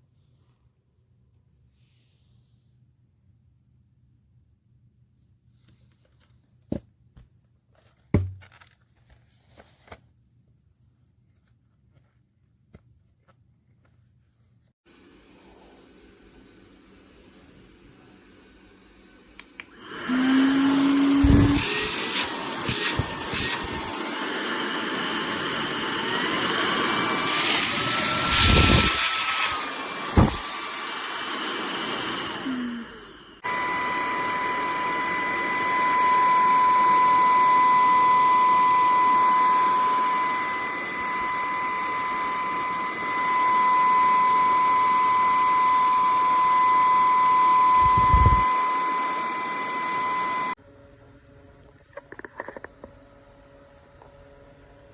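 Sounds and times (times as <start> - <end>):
vacuum cleaner motor whining: 14.9 - 50.6.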